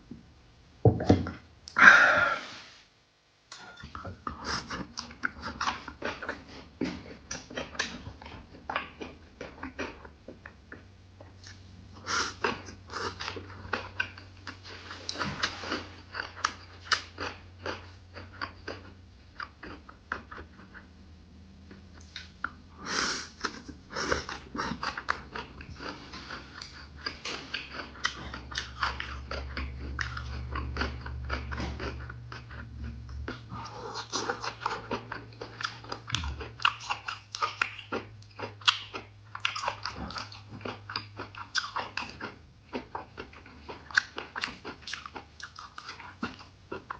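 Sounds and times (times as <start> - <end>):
low steady hum: 0.0 - 46.9
wet chewing and mouth smacks: 12.4 - 20.9, 21.7 - 22.6, 23.4 - 46.9.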